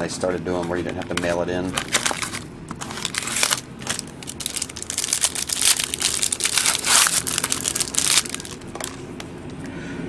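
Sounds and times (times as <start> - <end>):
wrapper crinkling and tearing: 1.7 - 9.0.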